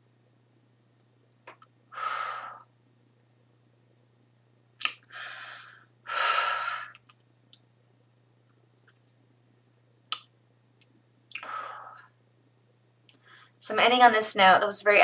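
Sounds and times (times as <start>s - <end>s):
woman breathing deeply: 1.9s - 2.7s, 5.1s - 7.0s, 11.4s - 12.2s.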